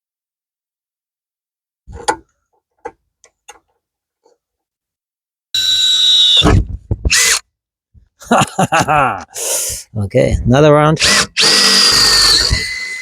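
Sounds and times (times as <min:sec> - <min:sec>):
electric drill drilling metal: 0:05.6 - 0:06.5, 0:07.1 - 0:07.4, 0:11.0 - 0:13.0.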